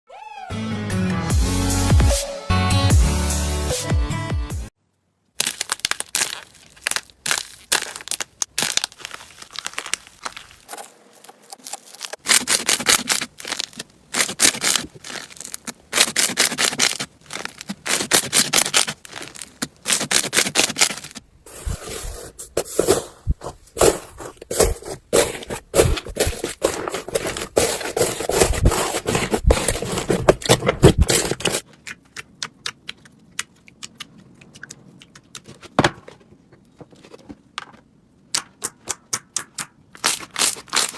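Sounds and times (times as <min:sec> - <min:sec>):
slime crackling and popping: 0:05.4 - 0:21.2.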